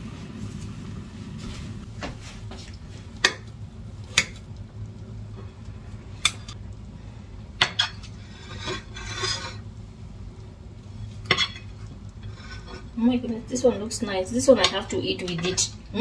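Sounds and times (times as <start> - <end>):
low steady hum: 0.0 - 16.0
utensil scraping pot: 7.6 - 9.7, 11.0 - 16.0.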